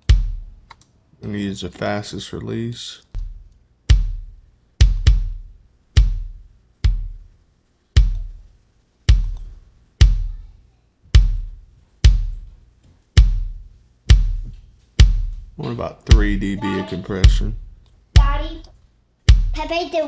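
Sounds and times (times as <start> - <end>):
kick drum thumps: 0.0 - 0.7, 3.2 - 7.4, 8.0 - 20.0.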